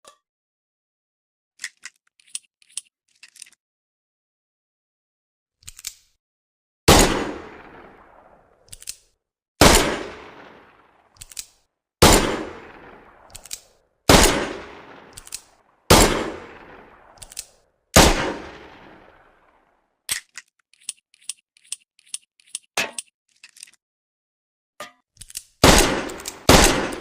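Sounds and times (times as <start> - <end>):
metallic clicks and rattle: 11.2 - 11.6, 15.1 - 15.5, 17.2 - 17.6, 25.2 - 27.0.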